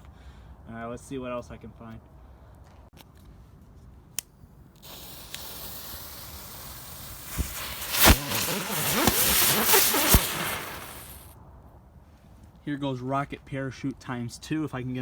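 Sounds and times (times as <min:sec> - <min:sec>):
firework hissing: 0:04.8 - 0:11.3
firework pops and crackles: 0:04.8 - 0:11.4.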